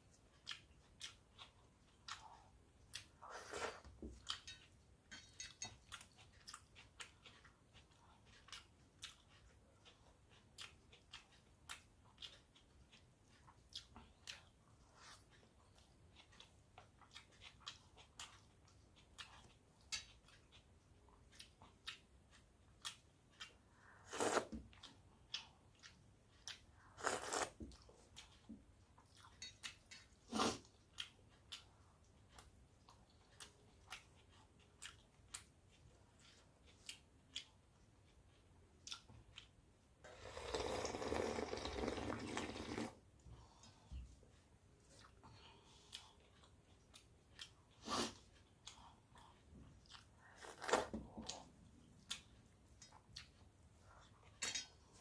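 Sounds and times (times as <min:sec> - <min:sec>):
person chewing food: 0:00.0 - 0:55.0
food crunching: 0:21.3 - 0:28.4.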